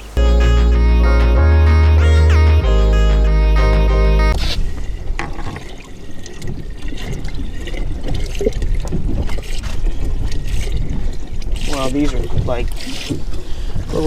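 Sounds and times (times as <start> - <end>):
water splashing around boat: 4.6 - 14.0.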